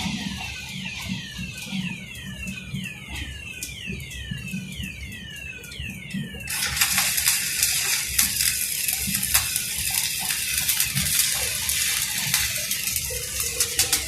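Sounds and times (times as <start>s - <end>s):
arc welding crackling: 6.3s - 14.0s.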